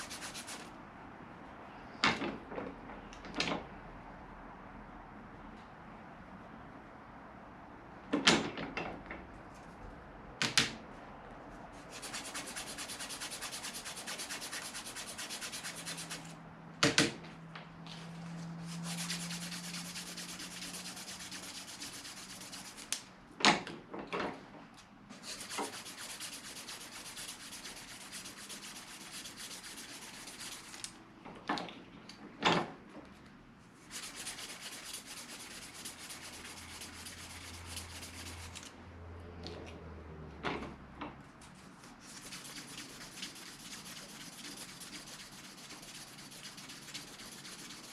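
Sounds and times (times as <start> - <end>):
sandpaper rasping back and forth: 0.0 - 0.7, 11.8 - 16.4, 18.3 - 23.0, 25.2 - 30.8, 33.8 - 38.7, 42.0 - 47.9.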